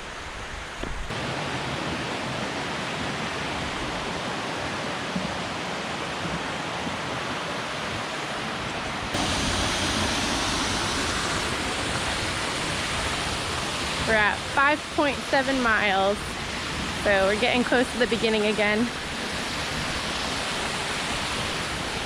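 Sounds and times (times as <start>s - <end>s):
rushing water: 0.0s - 22.0s.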